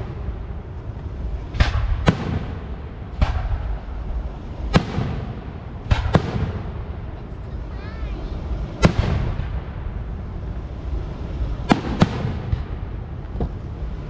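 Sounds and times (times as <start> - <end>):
fireworks bangs: 0.0 - 14.0
low rumble: 0.0 - 14.0.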